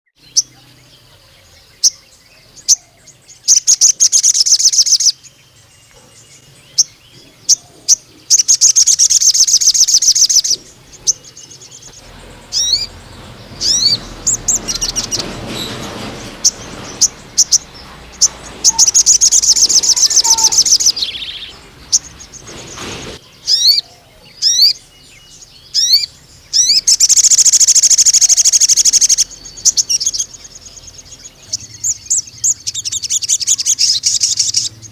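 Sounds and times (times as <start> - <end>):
sunbird singing fast trills: 0.1 - 34.9
rushing background hiss: 0.3 - 23.8.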